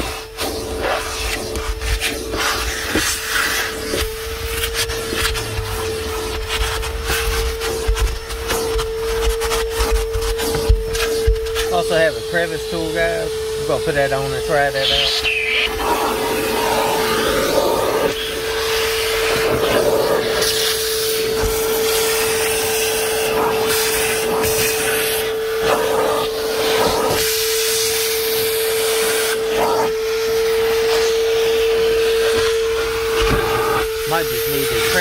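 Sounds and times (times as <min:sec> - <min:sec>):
shop vacuum whining: 0:00.0 - 0:35.0
air rushing at nozzle: 0:14.7 - 0:35.0.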